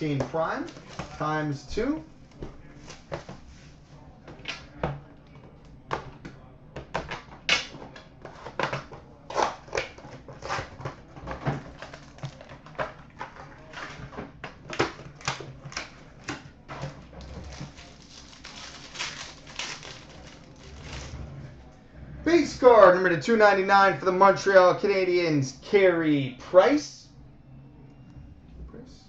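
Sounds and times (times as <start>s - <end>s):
packaging crinkling and ripping: 17.2s - 21.1s.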